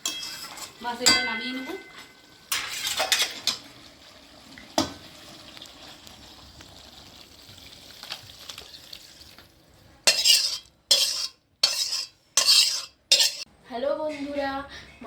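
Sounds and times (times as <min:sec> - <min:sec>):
metal spoon scraping a pan: 0:00.0 - 0:03.6, 0:10.0 - 0:13.5.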